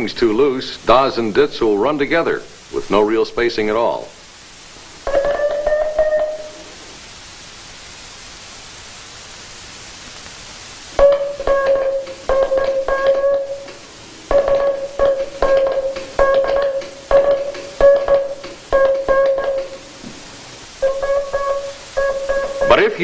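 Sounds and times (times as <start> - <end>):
hiss: 0.0 - 23.0
morse code tone: 5.1 - 6.7, 11.0 - 19.9, 20.8 - 23.0.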